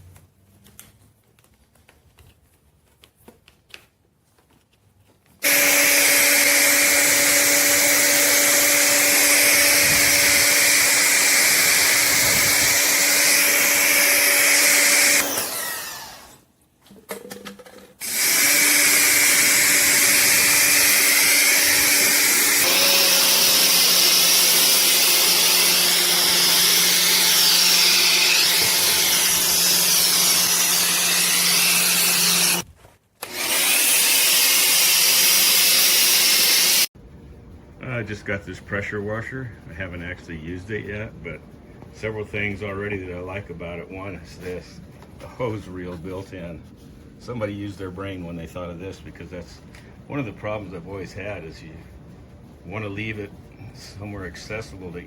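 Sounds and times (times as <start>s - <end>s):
pressure washer motor hum: 5.4s - 16.4s, 18.0s - 32.6s.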